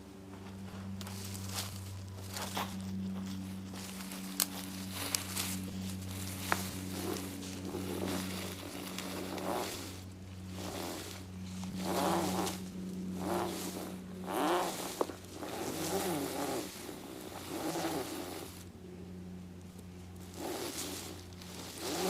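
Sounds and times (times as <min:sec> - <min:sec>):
steady low hum: 0:00.0 - 0:22.0
steel cable rasping: 0:03.8 - 0:18.7, 0:19.9 - 0:22.0.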